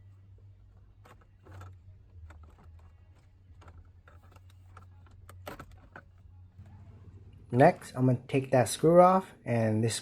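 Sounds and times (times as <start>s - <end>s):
plastic parts clicking and knocking: 0.0s - 6.4s.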